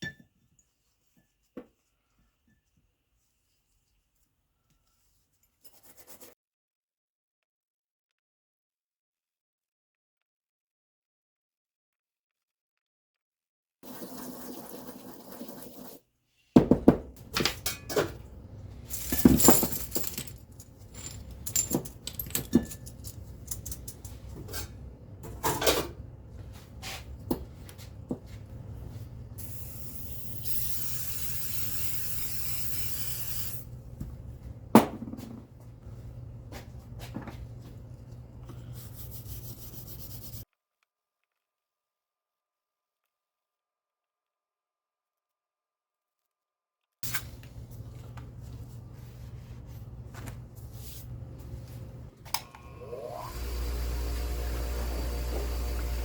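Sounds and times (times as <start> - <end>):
steady low hum: 17.2 - 30.5, 47.0 - 52.8.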